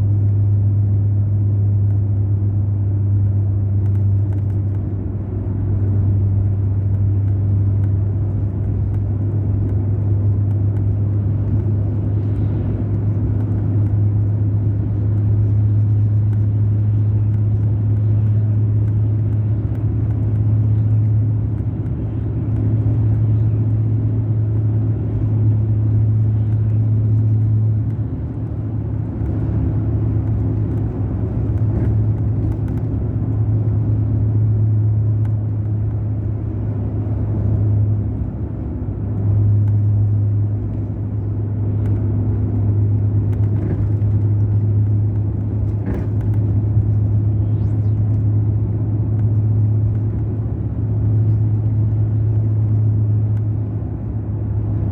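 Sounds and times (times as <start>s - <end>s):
diesel bus engine droning: 0.0s - 54.9s.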